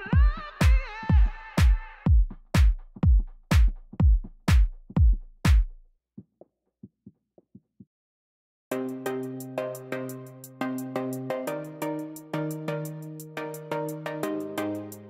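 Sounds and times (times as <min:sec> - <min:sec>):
drum machine kick: 0:00.0 - 0:07.9
synth melody: 0:08.7 - 0:15.0.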